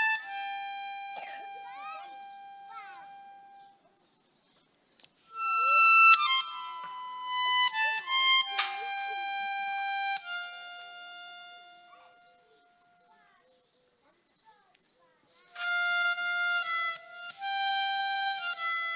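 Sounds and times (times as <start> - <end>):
reedy wind instrument playing: 0.0 - 3.8, 5.2 - 13.1, 15.5 - 18.9.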